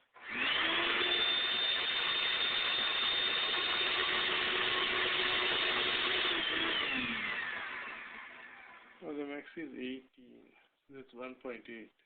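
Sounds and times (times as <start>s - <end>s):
vacuum cleaner motor whining: 0.1s - 9.0s.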